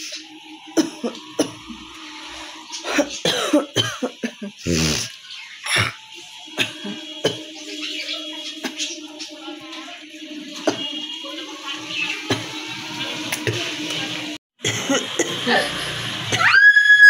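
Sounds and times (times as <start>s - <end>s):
woman coughing: 2.9s - 4.6s, 6.6s - 7.5s, 14.6s - 15.7s
rasping throat-clearing: 4.6s - 6.0s.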